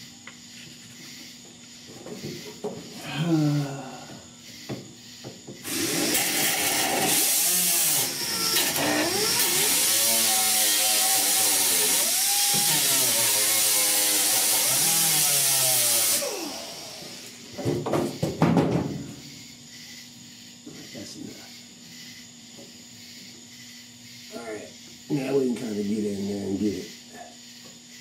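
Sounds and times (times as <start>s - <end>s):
angle grinder grinding metal: 5.6s - 17.5s
knocks: 17.6s - 19.1s.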